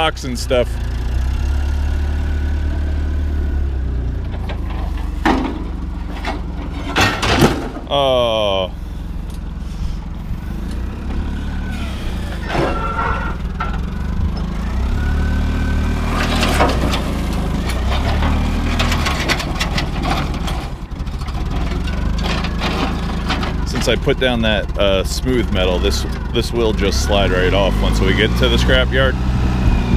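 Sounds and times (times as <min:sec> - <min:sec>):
engine running at low revs: 0:00.0 - 0:29.9
scrap metal knocks and clatters: 0:04.2 - 0:07.9, 0:12.2 - 0:14.4, 0:16.0 - 0:24.1.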